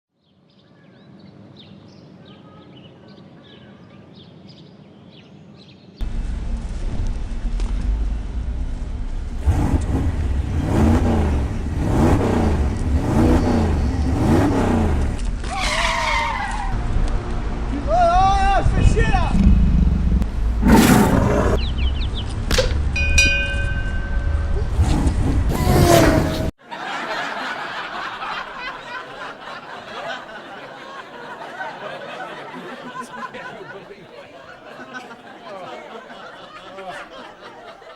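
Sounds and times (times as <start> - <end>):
engine revving: 6.1 - 15.4, 19.3 - 23.0, 24.6 - 26.5
crowd chattering and laughing: 26.6 - 37.9.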